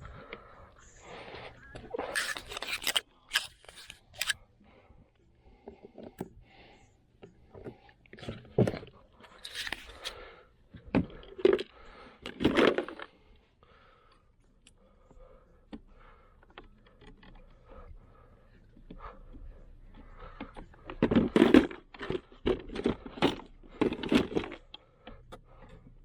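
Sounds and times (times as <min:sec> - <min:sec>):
handling scrapes and rustles: 0:01.1 - 0:04.4, 0:09.3 - 0:10.2.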